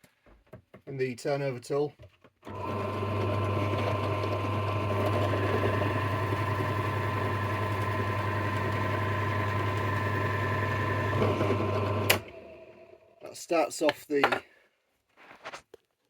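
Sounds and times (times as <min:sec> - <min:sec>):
small electric motor humming: 0:02.5 - 0:12.9.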